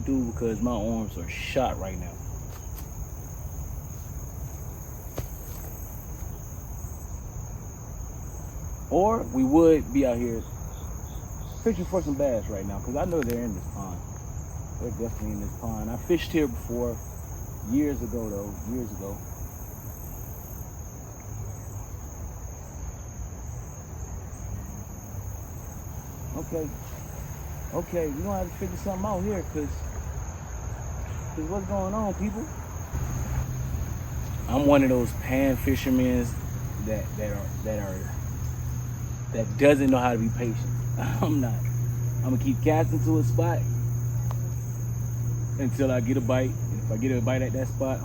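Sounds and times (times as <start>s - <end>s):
crickets chirping: 0.0s - 48.0s
insects trilling: 0.0s - 48.0s.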